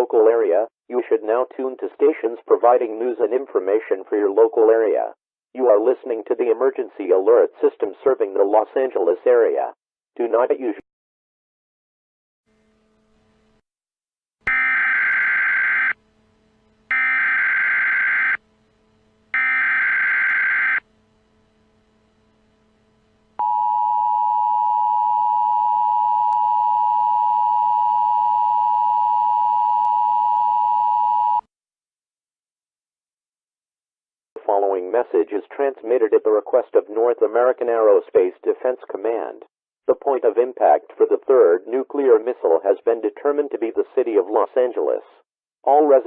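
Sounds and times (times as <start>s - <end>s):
harsh two-tone attention signal: 14.5s - 16.0s, 16.9s - 18.4s, 19.4s - 20.8s, 23.4s - 31.5s
screeching digital data bursts: 16.9s - 18.4s, 19.4s - 20.8s.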